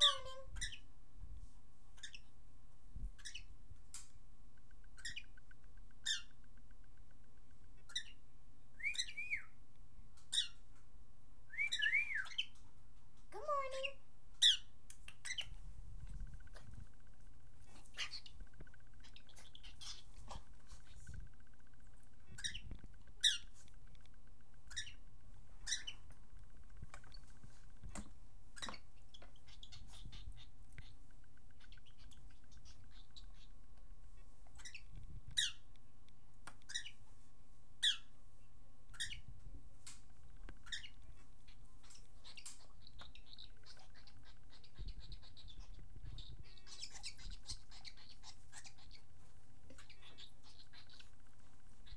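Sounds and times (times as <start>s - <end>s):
cockatiel chirping: 0.0s - 0.9s, 2.0s - 2.3s, 3.2s - 3.5s, 4.8s - 6.4s, 7.8s - 8.2s, 8.8s - 9.6s, 10.3s - 10.6s, 11.5s - 12.6s, 13.4s - 15.6s, 17.7s - 21.6s, 22.3s - 23.7s, 24.7s - 25.0s, 25.6s - 26.1s, 28.6s - 35.7s, 36.5s - 37.0s, 37.8s - 38.1s, 38.9s - 39.3s, 40.4s - 51.9s.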